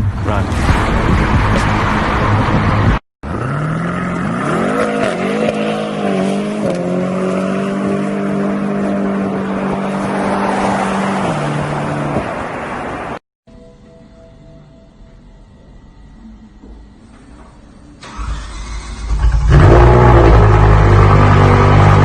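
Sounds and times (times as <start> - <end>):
car engine revving: 0.4 - 11.6, 18.0 - 22.0.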